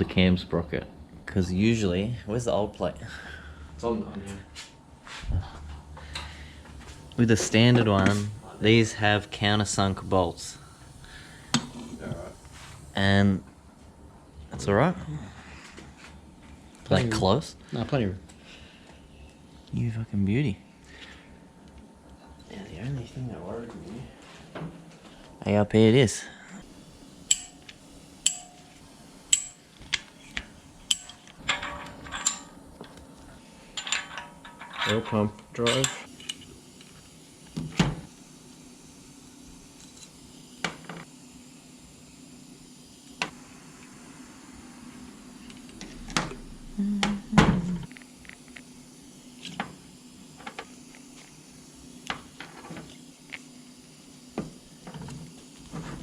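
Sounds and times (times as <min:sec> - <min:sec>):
metal tools clinking: 0:27.3 - 0:32.6, 0:33.8 - 0:36.5.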